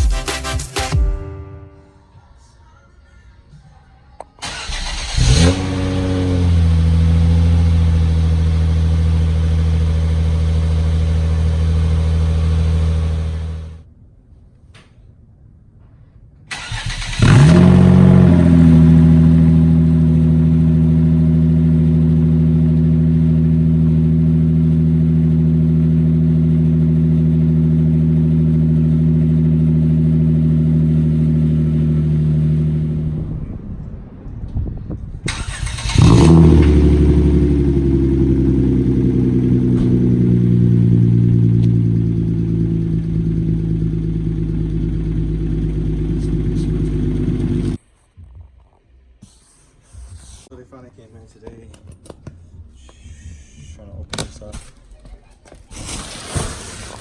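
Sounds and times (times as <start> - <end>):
car engine starting and idling: 4.3 - 13.8, 16.5 - 47.8.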